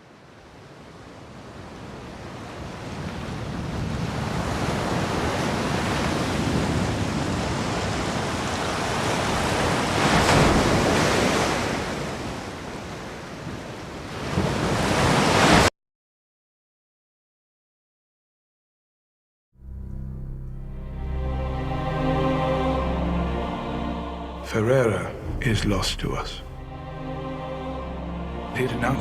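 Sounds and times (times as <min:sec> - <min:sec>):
sea surf: 0:00.0 - 0:15.7, 0:21.0 - 0:29.0
wind: 0:00.0 - 0:15.7.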